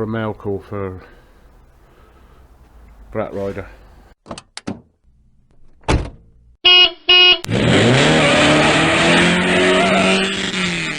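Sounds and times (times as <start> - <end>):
short car horn beeps: 6.6 - 7.5
car engine starting and revving: 7.4 - 10.9.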